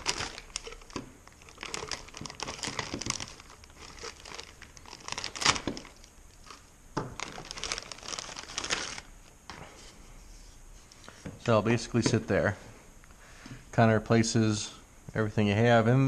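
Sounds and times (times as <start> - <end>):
plastic packaging crinkling: 0.0 - 9.3.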